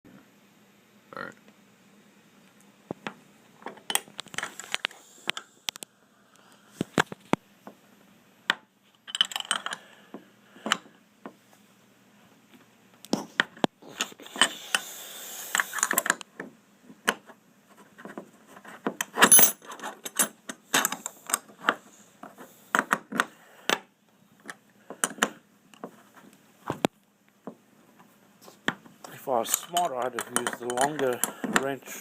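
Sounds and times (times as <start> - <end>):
metal hardware and wrench clinking: 19.2 - 21.0, 29.1 - 31.7.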